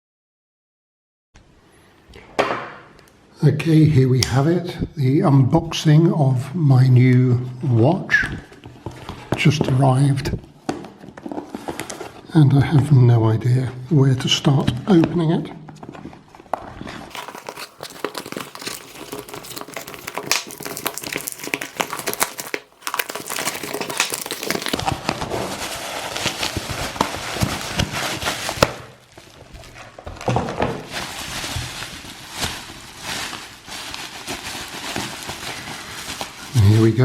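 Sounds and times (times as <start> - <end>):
packaging crinkling and tearing: 16.8 - 37.0.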